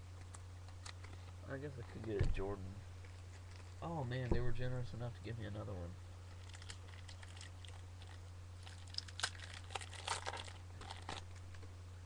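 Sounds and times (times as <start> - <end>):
card pack wrapper crinkling: 6.3 - 11.7.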